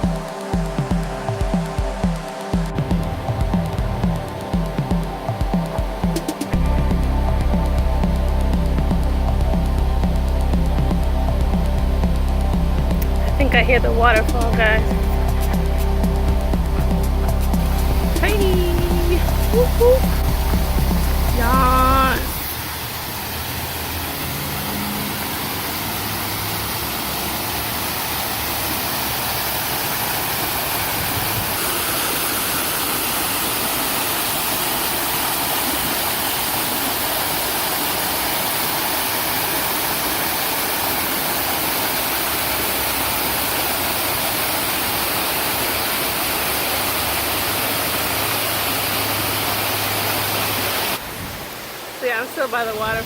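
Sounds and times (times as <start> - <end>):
waterfall over rocks: 13.0 - 53.0.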